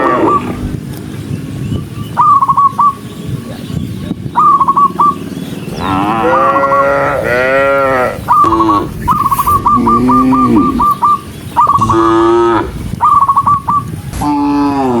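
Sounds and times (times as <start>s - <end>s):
cattle mooing: 0.0s - 0.6s, 5.8s - 11.0s, 11.7s - 12.8s, 14.1s - 15.0s
high trilled chirp: 8.3s - 12.4s, 13.0s - 14.1s.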